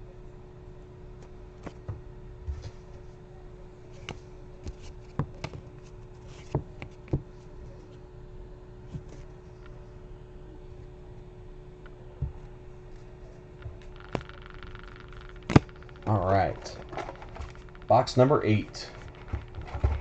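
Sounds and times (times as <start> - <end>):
faint steady hum: 0.0 - 20.0
cards and packaging handled: 13.8 - 20.0.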